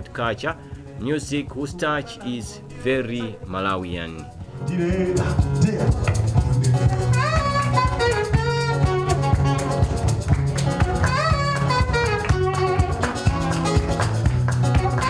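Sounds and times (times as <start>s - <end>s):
plucked acoustic guitar: 0.0s - 15.0s
steady bass line: 3.4s - 15.0s.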